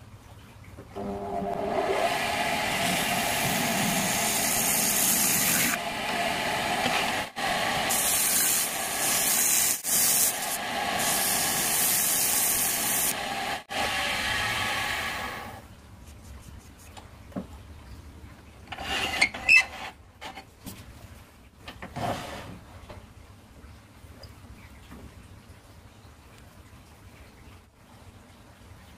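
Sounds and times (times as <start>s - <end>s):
tool hissing on turning wood: 1.6s - 15.6s.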